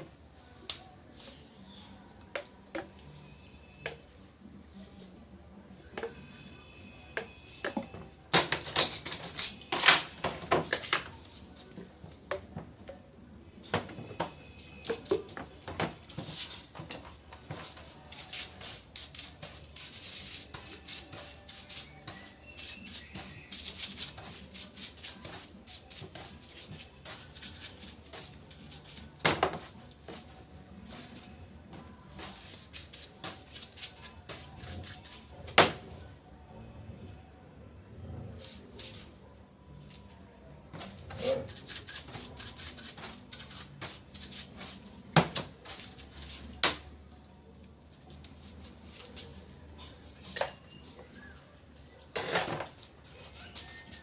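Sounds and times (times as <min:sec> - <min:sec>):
metal parts clinking: 0:08.3 - 0:10.9.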